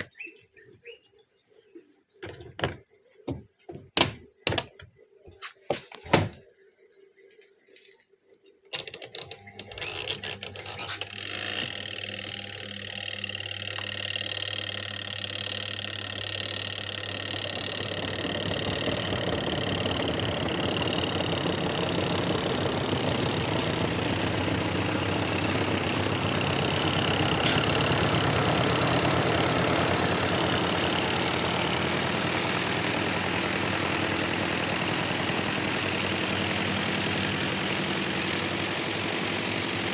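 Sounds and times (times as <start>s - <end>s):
washing machine motor hum: 11.6s - 39.9s.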